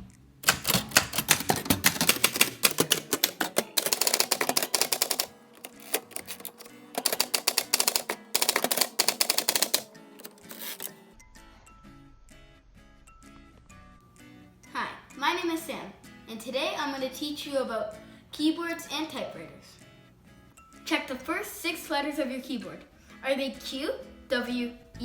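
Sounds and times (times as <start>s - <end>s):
typewriter keys clacking: 0.4s - 10.9s.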